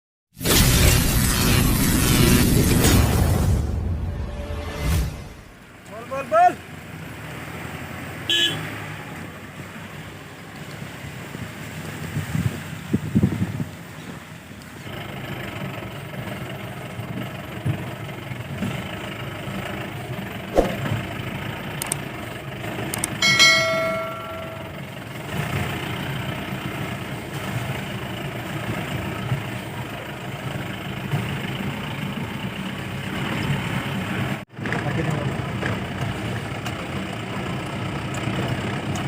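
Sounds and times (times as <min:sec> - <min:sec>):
diesel engine under heavy load: 0:05.4 - 0:39.0
sharp knock: 0:20.6 - 0:20.9
bell-like ringing tone: 0:23.2 - 0:25.0.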